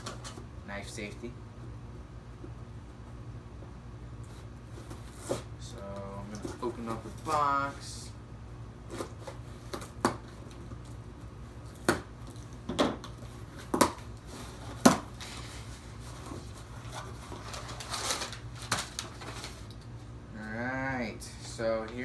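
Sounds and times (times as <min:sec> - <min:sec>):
packaging rustling: 0:06.2 - 0:07.8, 0:08.9 - 0:20.0.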